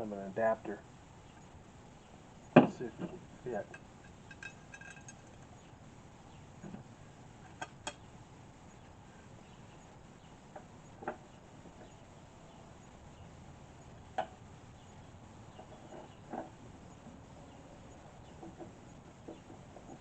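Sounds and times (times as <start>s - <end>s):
metal parts clinking and knocking: 4.1s - 5.4s.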